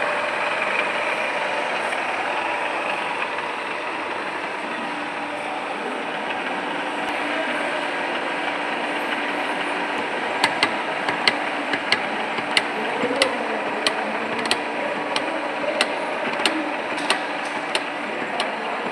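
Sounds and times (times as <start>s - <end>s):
machine humming: 0.0s - 18.9s
sharp clicks: 10.0s - 18.9s.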